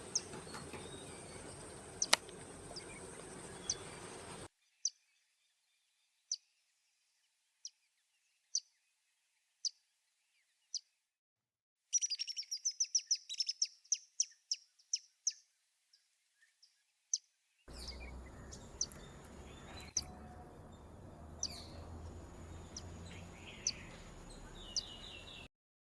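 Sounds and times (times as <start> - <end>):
short high bird chirps: 11.9 - 15.4.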